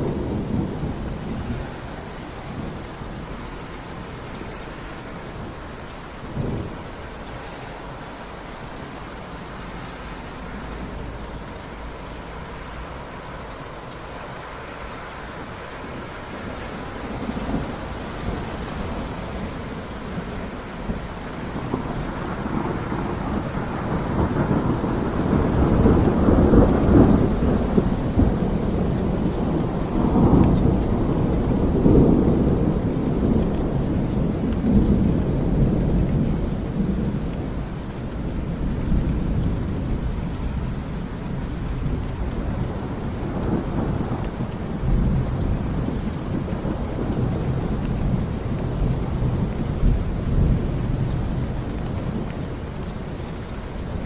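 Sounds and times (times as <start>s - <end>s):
steady rain: 0.0s - 54.0s
thunder rolling: 15.9s - 52.8s.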